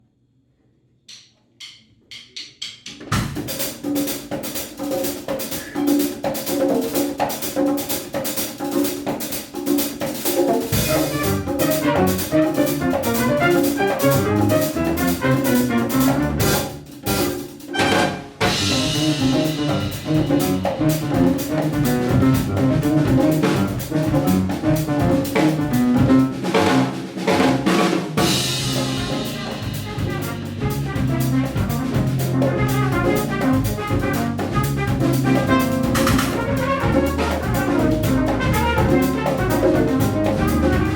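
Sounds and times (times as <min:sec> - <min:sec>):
drum kit and hand percussion: 0:01.1 - 0:40.9
piano: 0:10.6 - 0:40.9
bass line: 0:10.7 - 0:26.9, 0:28.2 - 0:40.9.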